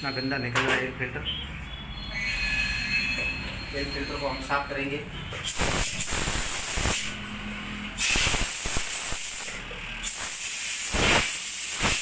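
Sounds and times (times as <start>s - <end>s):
air blow gun hissing: 5.5s - 7.2s, 8.0s - 12.0s.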